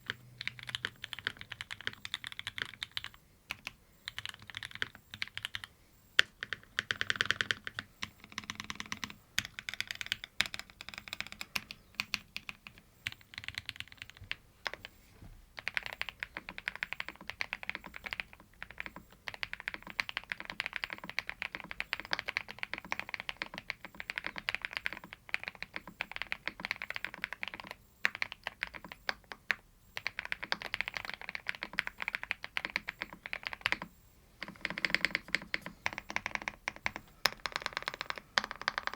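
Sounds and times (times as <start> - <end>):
mechanical keyboard typing: 0.0 - 14.9, 15.6 - 38.9.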